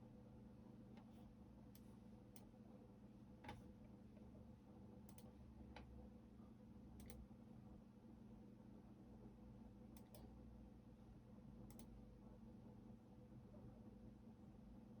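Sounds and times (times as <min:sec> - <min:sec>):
keyboard and mouse clicks: 0:07.0 - 0:07.2.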